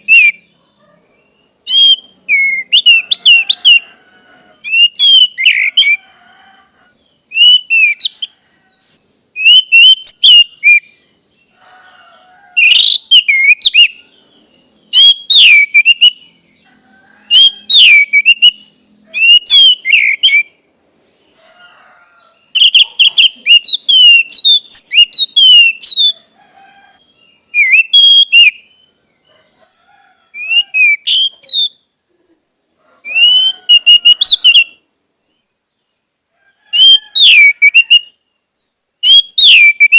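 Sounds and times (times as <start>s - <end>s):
thrush singing whistled phrases: 0.0s - 0.5s, 1.6s - 4.0s, 4.6s - 6.1s, 7.2s - 8.3s, 9.3s - 11.0s, 12.6s - 16.6s, 17.2s - 20.6s, 22.5s - 26.2s, 27.5s - 28.8s, 30.4s - 31.8s, 33.1s - 34.8s, 36.7s - 38.2s, 39.0s - 39.9s
steady high hiss: 0.0s - 36.4s.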